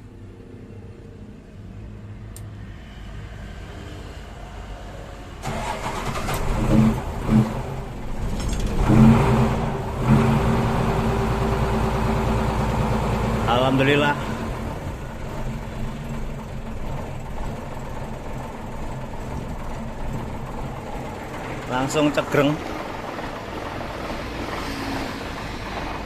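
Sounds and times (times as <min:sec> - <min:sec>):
diesel truck engine starting and revving: 0:05.3 - 0:26.0.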